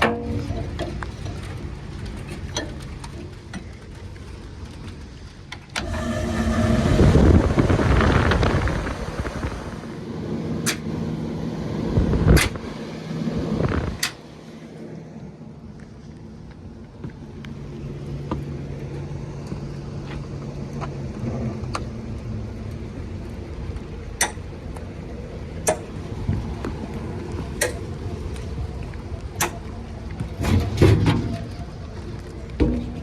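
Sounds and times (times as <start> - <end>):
machine hum: 5.8 - 14.8.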